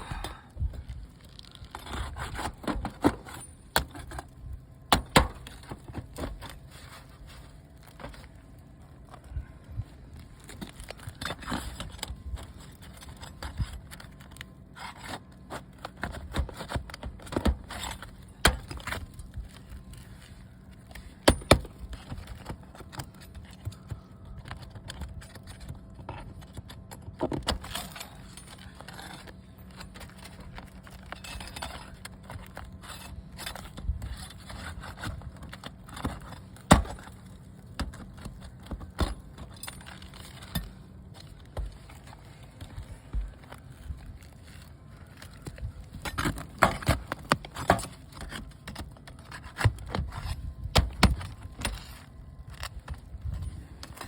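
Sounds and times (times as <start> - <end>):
hand tools scraping shingles: 1.6 - 4.3, 27.4 - 43.4.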